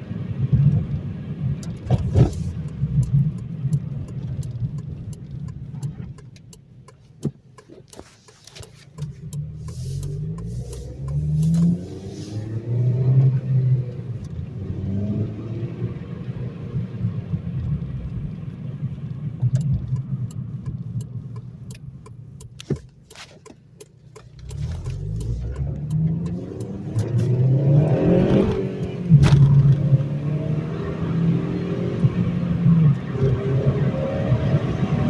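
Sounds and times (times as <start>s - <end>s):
car engine running: 0.0s - 35.0s
light evenly spaced clicks: 2.6s - 11.8s, 19.4s - 27.6s.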